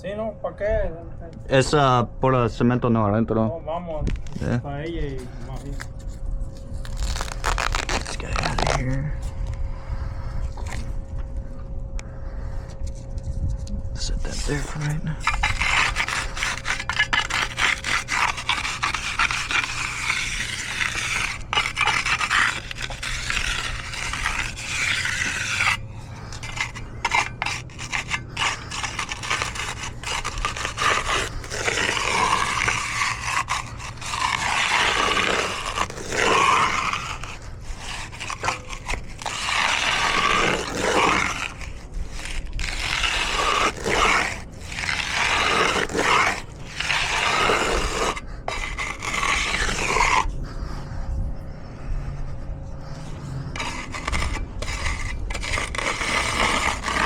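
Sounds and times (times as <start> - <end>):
tools scraping wet concrete: 5.1 - 9.0, 14.2 - 50.4, 53.0 - 57.0.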